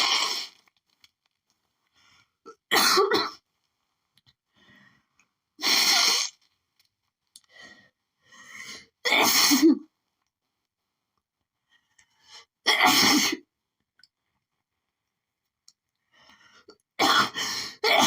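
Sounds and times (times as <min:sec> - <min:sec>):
faint breaths: 0:04.5 - 0:05.3.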